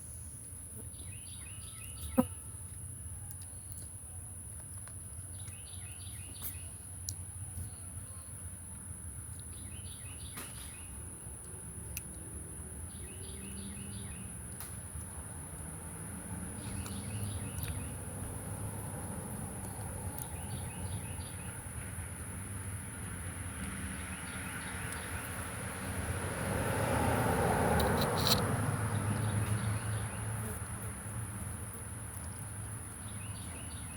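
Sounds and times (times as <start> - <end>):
bird chirping: 0.8 - 2.5, 5.3 - 8.3, 9.4 - 11.0, 12.8 - 14.4, 16.6 - 18.1, 19.6 - 21.9, 31.8 - 33.9.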